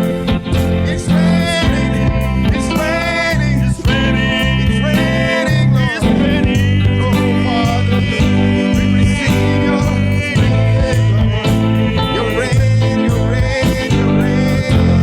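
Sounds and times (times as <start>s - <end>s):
church band playing: 0.0s - 15.0s
person singing long notes: 0.8s - 15.0s.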